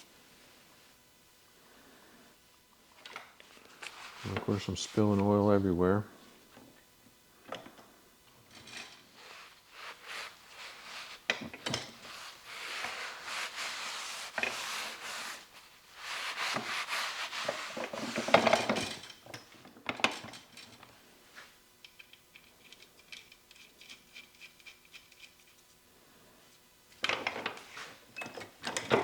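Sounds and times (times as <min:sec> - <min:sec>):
rag rubbing and wiping: 0:03.8 - 0:05.6, 0:09.1 - 0:18.7.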